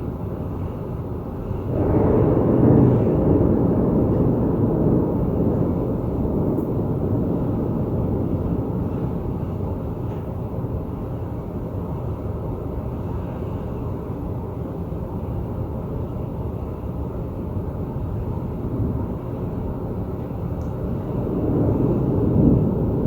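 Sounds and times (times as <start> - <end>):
thunder rumbling: 1.2 - 14.2, 17.0 - 23.0.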